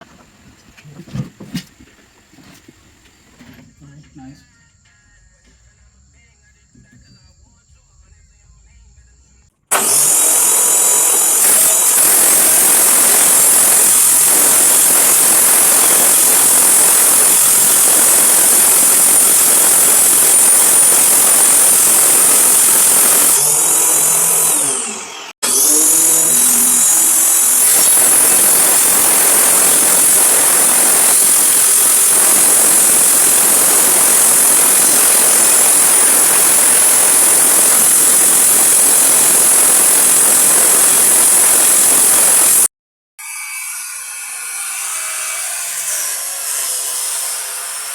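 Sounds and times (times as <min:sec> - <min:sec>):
power tool motor whirring: 0:09.7 - 0:42.7.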